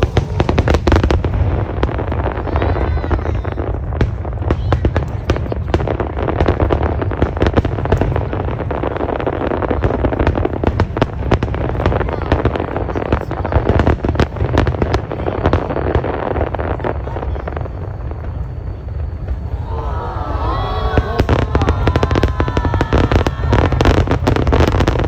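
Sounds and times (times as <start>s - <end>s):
low rumble of bursting shells: 0.0s - 19.7s
fireworks cracking: 0.0s - 25.0s.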